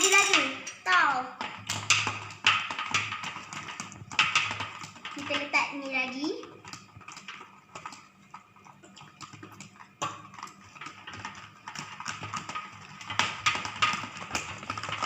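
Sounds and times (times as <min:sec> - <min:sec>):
slime being stirred: 0:00.0 - 0:15.0.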